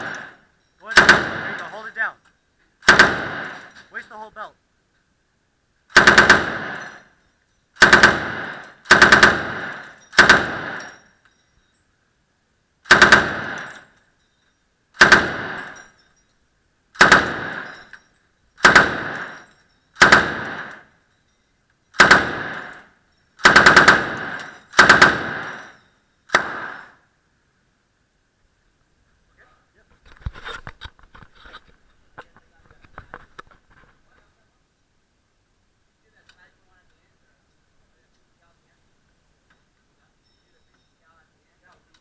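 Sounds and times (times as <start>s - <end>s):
gunfire echo: 0.0s - 2.0s, 2.8s - 3.9s, 5.9s - 7.1s, 7.8s - 11.1s, 12.9s - 13.9s, 15.0s - 15.9s, 17.0s - 17.9s, 18.6s - 20.9s, 22.0s - 27.0s
machine gun firing bursts: 0.0s - 2.0s, 2.8s - 3.8s, 5.9s - 7.1s, 7.8s - 11.1s, 12.8s - 13.9s, 15.0s - 15.9s, 17.0s - 17.9s, 18.6s - 20.9s, 22.0s - 27.0s.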